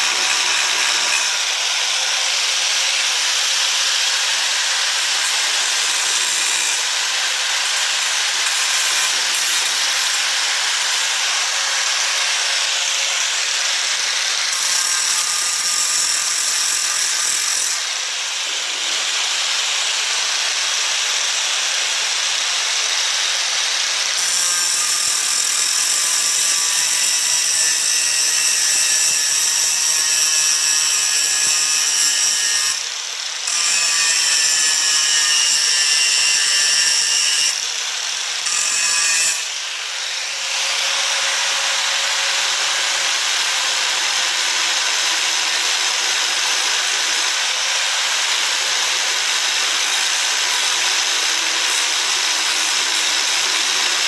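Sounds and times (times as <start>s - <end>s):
grinder high whine: 0.0s - 23.6s
angle grinder grinding metal: 0.0s - 54.0s.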